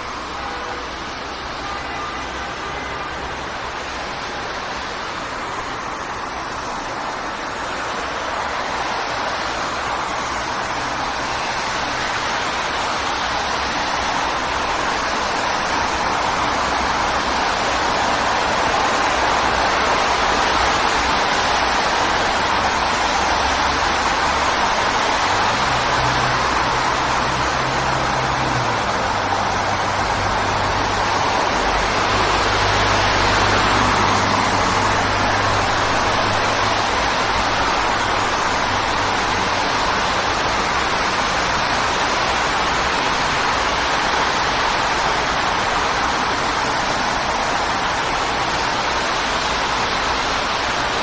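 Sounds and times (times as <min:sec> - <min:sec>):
city street traffic: 0:00.0 - 0:51.0.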